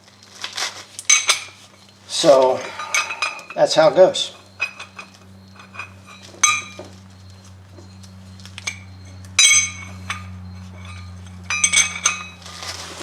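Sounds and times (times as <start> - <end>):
steady low hum: 0.0 - 13.0
metal cups clinking: 2.6 - 3.8.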